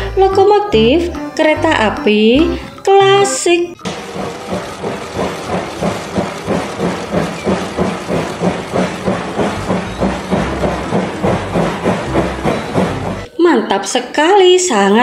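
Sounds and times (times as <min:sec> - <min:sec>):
steam locomotive chuffing: 0:03.8 - 0:13.4.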